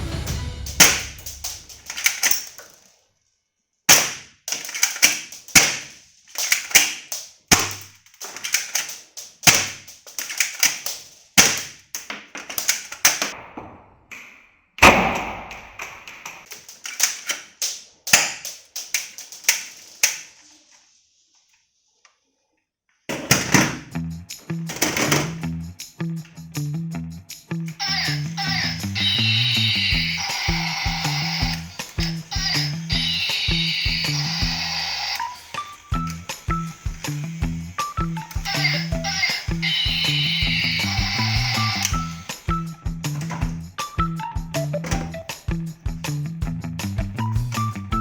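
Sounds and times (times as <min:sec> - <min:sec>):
plastic toy parts clicking: 0:01.4 - 0:03.0, 0:03.9 - 0:13.4, 0:16.4 - 0:20.6, 0:27.6 - 0:43.5.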